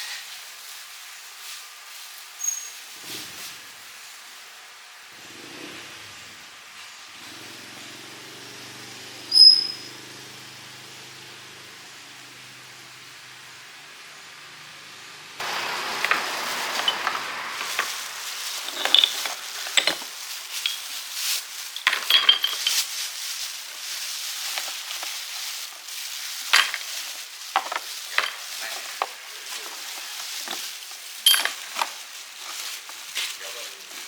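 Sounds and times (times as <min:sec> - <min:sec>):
steady hiss: 0:00.0 - 0:05.2, 0:10.4 - 0:34.0
scraping and rustling: 0:15.4 - 0:34.0
light metallic clinks: 0:16.0 - 0:20.9, 0:21.8 - 0:22.9, 0:31.3 - 0:31.9.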